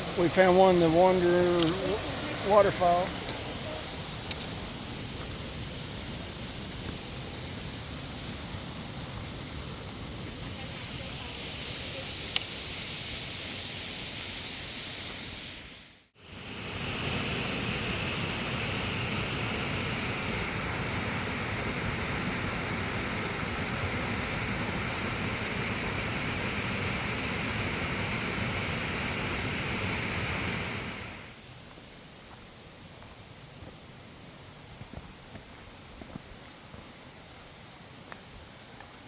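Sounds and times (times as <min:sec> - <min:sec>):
waterfall rushing: 0:00.0 - 0:08.8, 0:16.2 - 0:31.4.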